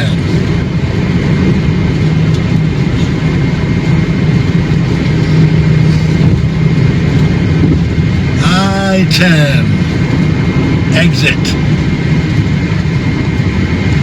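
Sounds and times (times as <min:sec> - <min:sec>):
car engine drone: 0:00.0 - 0:14.0
tyre and wind noise: 0:01.0 - 0:08.2.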